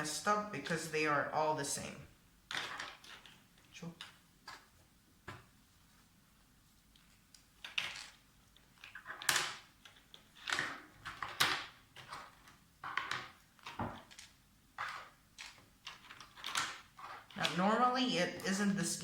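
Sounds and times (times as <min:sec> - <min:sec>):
plastic clicking and scraping: 0:06.9 - 0:17.7.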